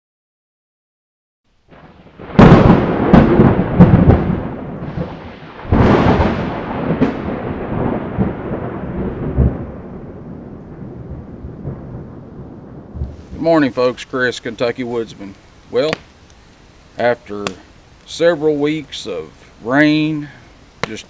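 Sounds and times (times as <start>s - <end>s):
thunder cracks and rumble: 1.7s - 14.0s.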